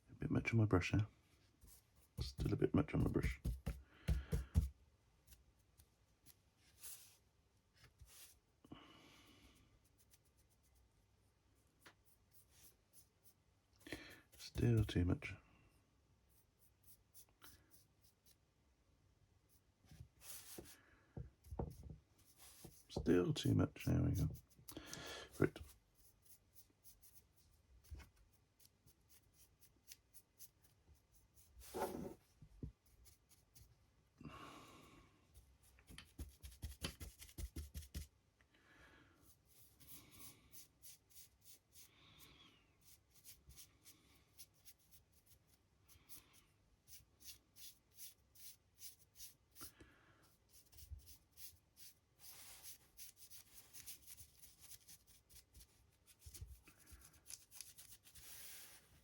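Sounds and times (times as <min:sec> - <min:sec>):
paint brush scratching on model: 0:09.8 - 0:11.0, 0:11.6 - 0:13.4, 0:16.2 - 0:18.4, 0:19.4 - 0:20.8, 0:21.6 - 0:24.7, 0:25.3 - 0:33.8, 0:35.4 - 0:38.1, 0:39.2 - 0:41.9, 0:42.8 - 0:49.7, 0:50.3 - 0:59.0.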